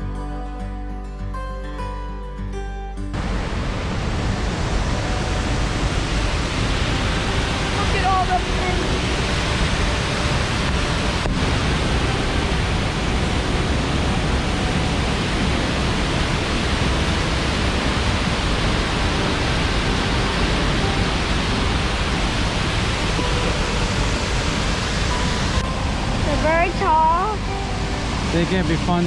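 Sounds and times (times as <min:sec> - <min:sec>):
waterfall rushing: 0:03.2 - 0:29.0.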